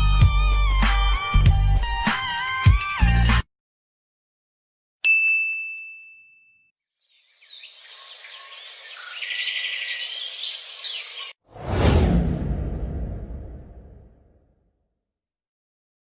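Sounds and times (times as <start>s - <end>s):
birds chirping: 7.0s - 11.4s.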